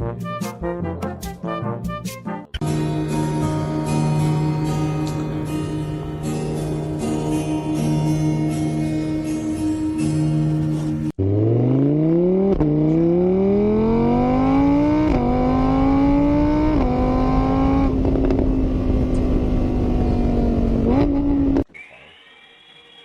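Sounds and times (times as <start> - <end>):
engine accelerating through gears: 10.6 - 21.7.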